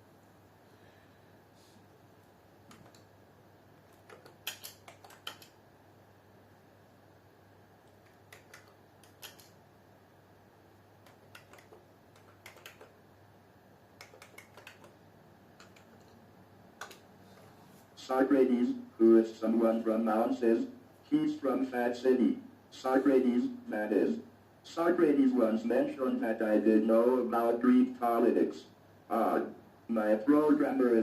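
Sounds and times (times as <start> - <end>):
faint keyboard typing: 2.6 - 3.1, 3.8 - 5.6, 7.8 - 9.6, 11.0 - 13.0, 14.0 - 16.2, 16.8 - 17.5.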